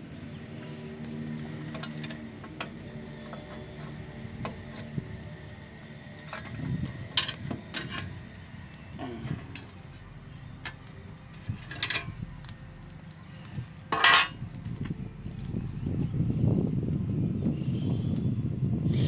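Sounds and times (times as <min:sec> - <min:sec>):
metal tools clinking and scraping: 0:06.2 - 0:08.3, 0:09.2 - 0:10.8, 0:11.4 - 0:12.2, 0:13.8 - 0:14.4.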